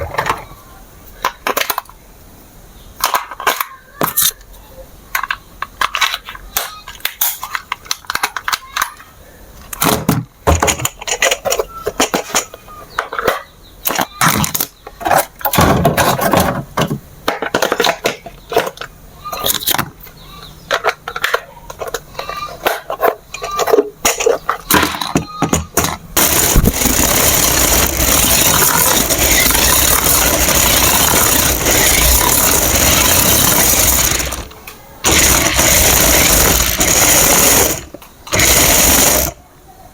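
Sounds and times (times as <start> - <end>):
plastic toy car rattling: 5.2 - 9.1, 9.7 - 19.9, 20.7 - 39.4
toy electric motor and gears: 17.6 - 39.4.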